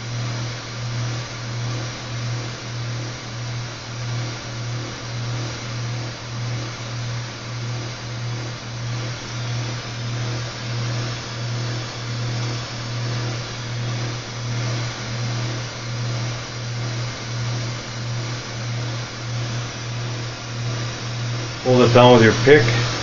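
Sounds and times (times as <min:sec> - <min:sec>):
gas torch flame hissing: 0:09.0 - 0:23.0.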